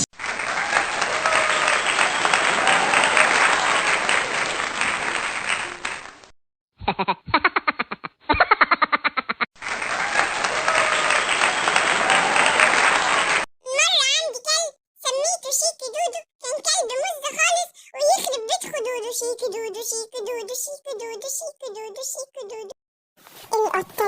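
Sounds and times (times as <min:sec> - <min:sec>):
applause: 0:00.0 - 0:06.3, 0:09.6 - 0:13.5.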